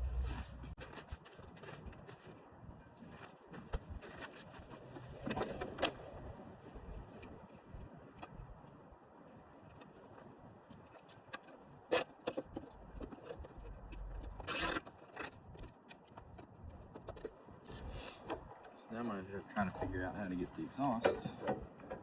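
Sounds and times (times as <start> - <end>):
scrape or rustle: 0.0 - 6.3.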